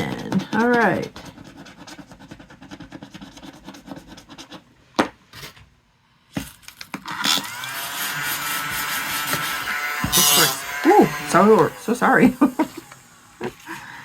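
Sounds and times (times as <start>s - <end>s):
paper rubbing and scratching: 0.0s - 4.7s, 8.0s - 10.6s.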